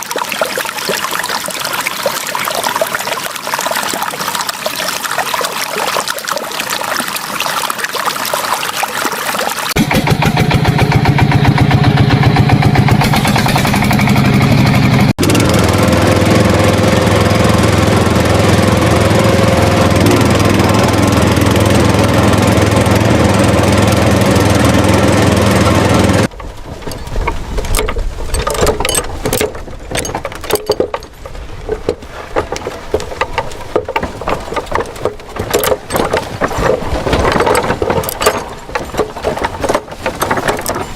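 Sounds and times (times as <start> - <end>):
scattered clicks and rattles: 26.2 - 40.9.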